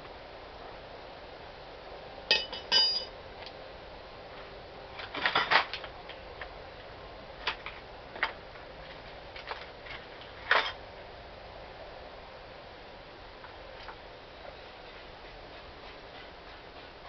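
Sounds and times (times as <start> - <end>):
hand tools knocking on steel: 2.3 - 3.1.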